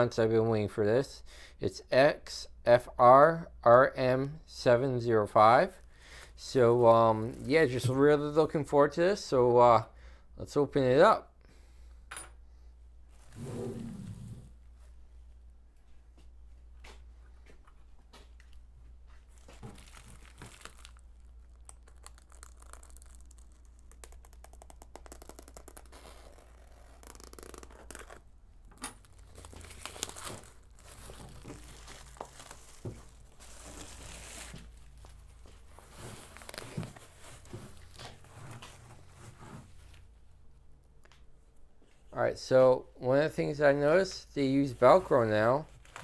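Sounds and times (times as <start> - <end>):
packaging crinkling and tearing: 19.3 - 28.2, 29.0 - 38.2, 45.7 - 46.0.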